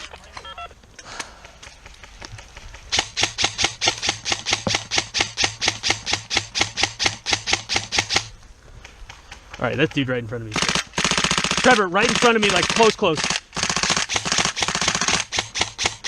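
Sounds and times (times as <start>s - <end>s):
rapid mechanical clicking: 10.5s - 16.0s.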